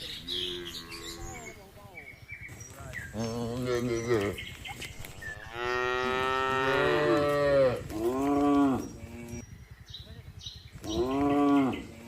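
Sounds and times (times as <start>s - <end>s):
cow mooing: 0.3s - 1.4s, 5.4s - 9.4s, 10.9s - 12.0s.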